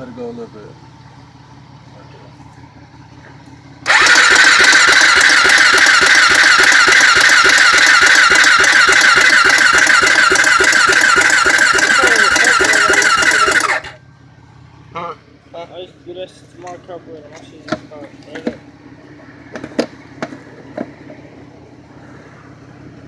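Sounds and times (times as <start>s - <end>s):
engine cranking on starter: 3.7s - 14.0s.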